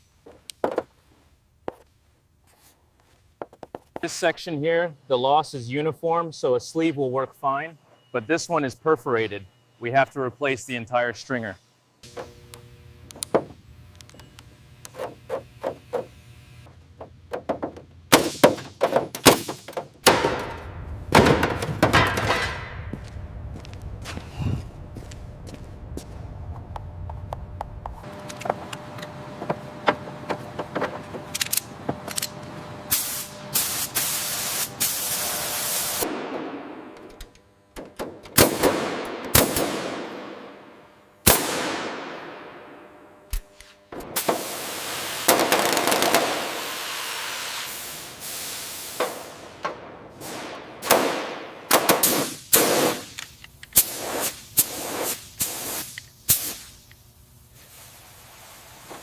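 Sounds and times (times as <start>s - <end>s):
hissing bursts: 44.1s - 49.6s, 51.8s - 53.2s, 53.8s - 56.9s.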